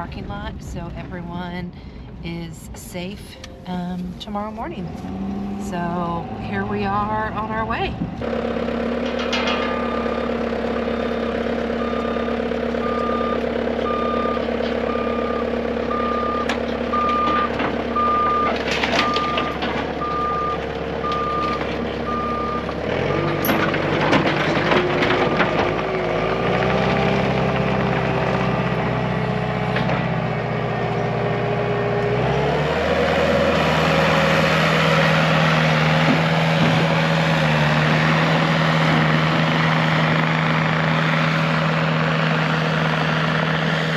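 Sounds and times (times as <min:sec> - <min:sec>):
loader engine running: 0:00.0 - 0:43.9
reversing alarm beeps: 0:09.6 - 0:23.6.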